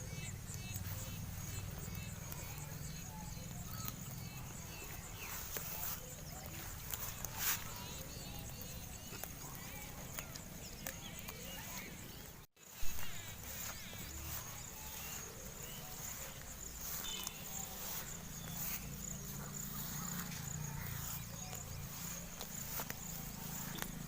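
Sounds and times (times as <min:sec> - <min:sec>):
high insect drone: 0:00.0 - 0:24.0.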